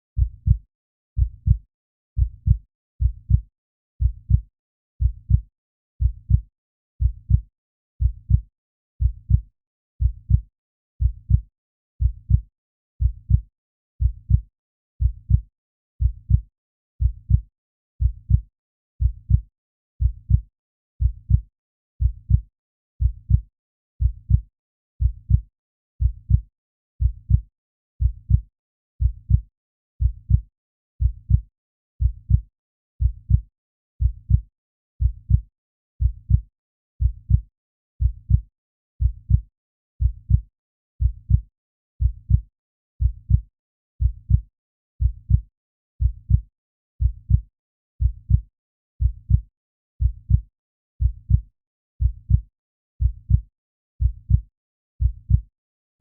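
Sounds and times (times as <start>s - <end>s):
heartbeat lub-dub: 2.2s - 2.6s.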